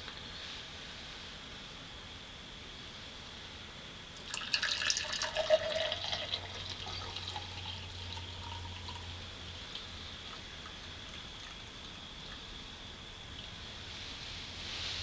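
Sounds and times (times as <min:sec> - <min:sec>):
hot tea pouring: 0:04.2 - 0:12.5.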